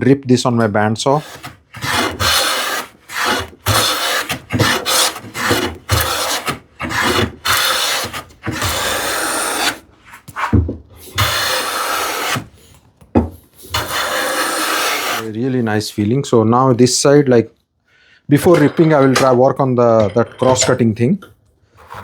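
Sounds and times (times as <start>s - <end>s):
hand tool scraping wood: 1.1s - 12.8s, 13.5s - 16.2s, 21.8s - 22.0s.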